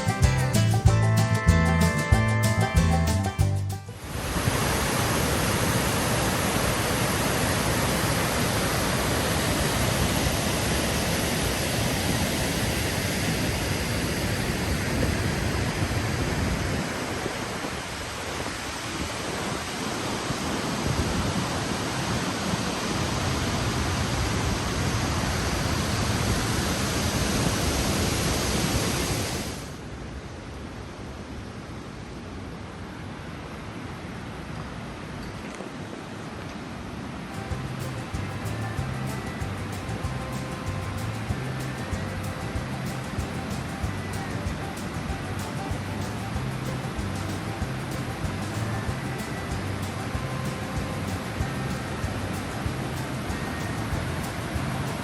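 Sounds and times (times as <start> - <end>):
waterfall rushing: 3.8 - 30.0, 36.6 - 55.0.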